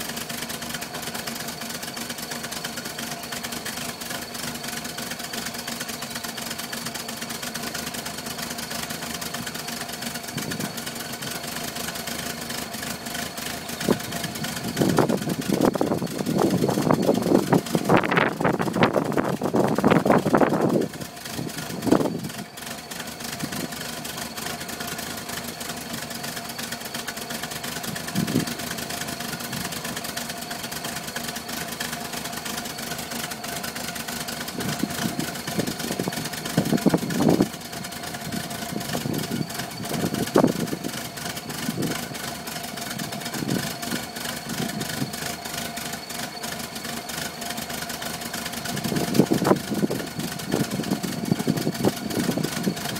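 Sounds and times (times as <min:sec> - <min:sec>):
engine idling roughly: 0:00.0 - 0:52.9.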